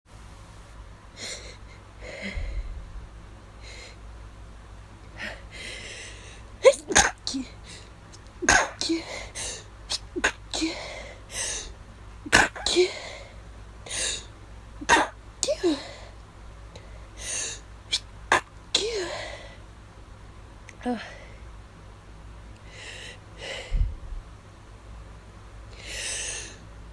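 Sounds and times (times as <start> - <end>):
person stifling sneezes: 6.6 - 7.5, 8.4 - 11.0, 12.3 - 13.1, 14.8 - 16.0, 17.9 - 19.3.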